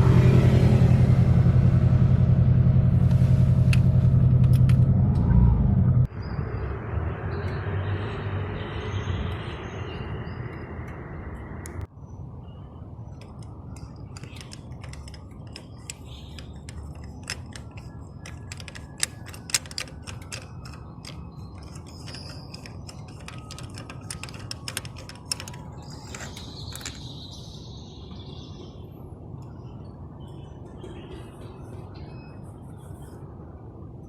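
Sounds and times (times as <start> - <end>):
light mechanical clicks and clatter: 13.1 - 27.2
sharp clicks: 13.1 - 27.2.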